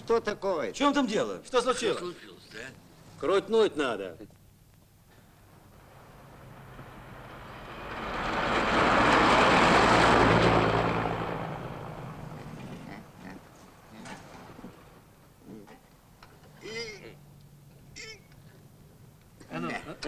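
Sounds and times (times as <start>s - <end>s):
motor vehicle passing by: 5.3s - 15.1s.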